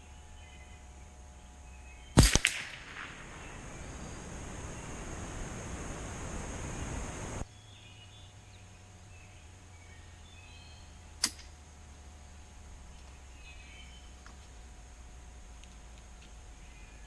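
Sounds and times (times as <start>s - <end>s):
birds chirping faintly: 0.0s - 11.2s, 12.0s - 17.0s
loud hiss of noise: 2.1s - 7.5s
rifle shot: 2.2s - 5.6s.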